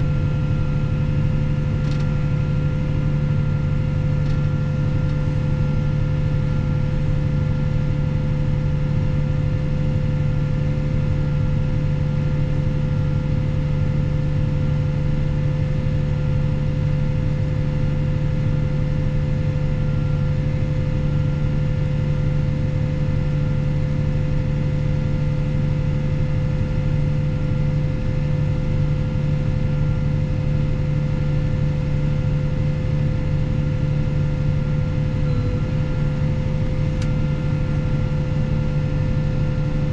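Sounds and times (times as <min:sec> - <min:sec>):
tractor diesel engine droning: 0:00.0 - 0:09.8, 0:31.4 - 0:39.9
high engine whine: 0:00.0 - 0:39.9.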